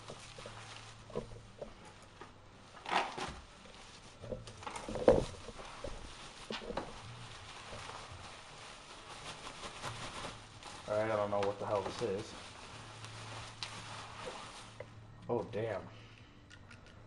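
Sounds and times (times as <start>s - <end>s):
packaging rustle: 2.9s - 14.8s.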